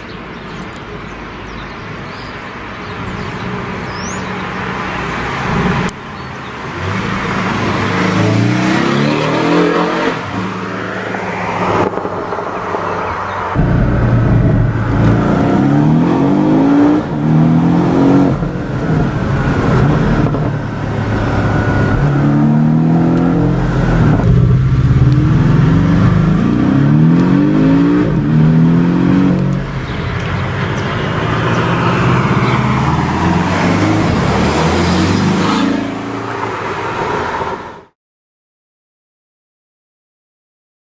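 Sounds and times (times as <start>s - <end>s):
car engine accelerating through gears: 6.7s - 36.5s.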